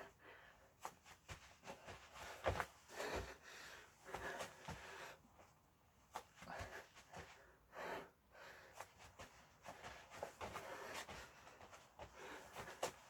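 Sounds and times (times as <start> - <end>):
person breathing hard: 10.5 - 13.0.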